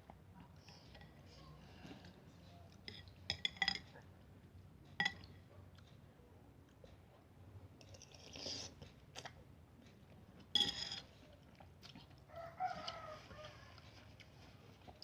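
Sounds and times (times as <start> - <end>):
person chewing: 10.4 - 15.0.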